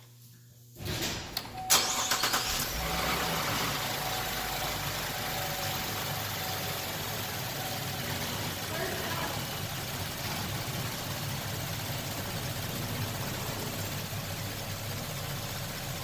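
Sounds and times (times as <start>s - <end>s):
car engine starting and idling: 0.8s - 16.0s.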